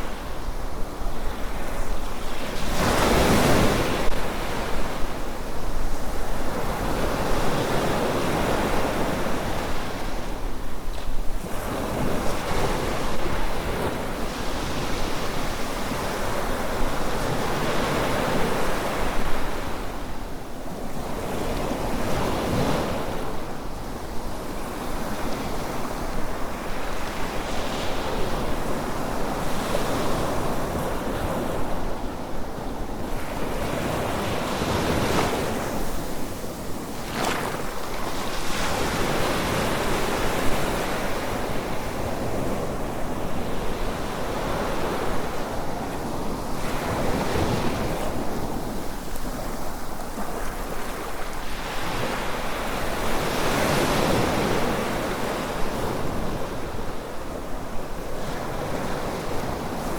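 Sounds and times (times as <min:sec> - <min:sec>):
wind: 0:00.0 - 0:59.9
sea waves breaking on beach: 0:33.2 - 0:57.2.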